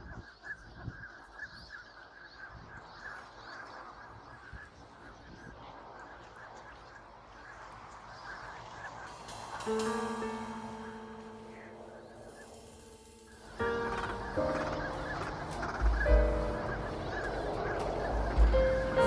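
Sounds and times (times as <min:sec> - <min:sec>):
flock of waterfowl calling: 0:00.0 - 0:19.0
low thumps: 0:13.4 - 0:19.0.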